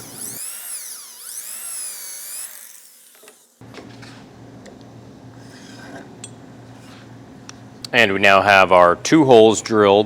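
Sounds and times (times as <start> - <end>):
electric drill whine: 0.0 - 3.6.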